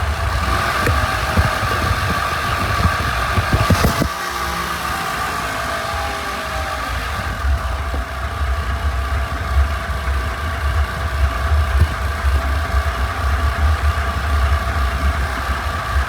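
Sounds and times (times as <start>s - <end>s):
lawnmower engine running: 0.0s - 16.0s.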